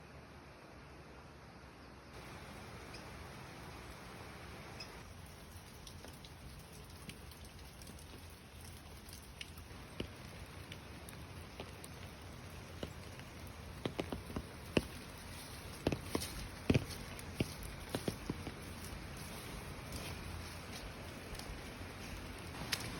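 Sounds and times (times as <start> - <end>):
rain falling: 2.2 - 22.9
sharp drip taps: 5.8 - 19.0.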